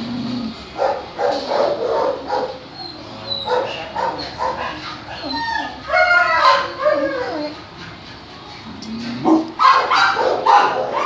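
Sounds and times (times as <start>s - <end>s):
dogs barking: 0.0s - 11.0s.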